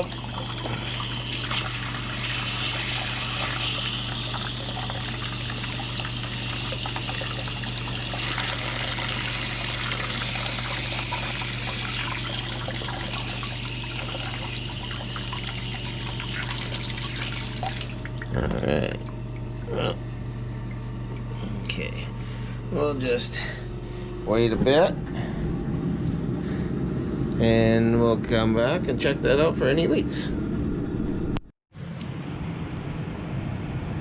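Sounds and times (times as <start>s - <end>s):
water running from drain valve: 0.0s - 20.0s.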